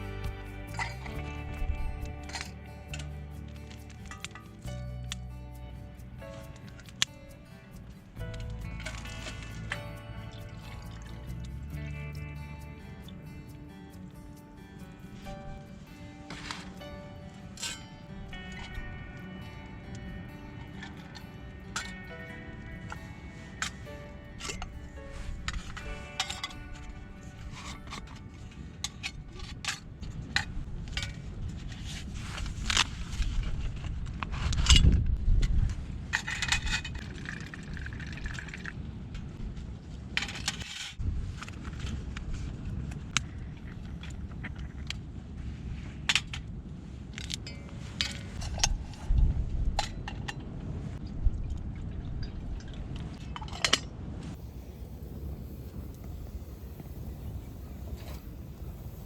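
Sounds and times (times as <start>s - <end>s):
camp cookware clinking: 0.0s - 14.2s, 14.8s - 31.2s
steady low rumble: 0.0s - 59.0s.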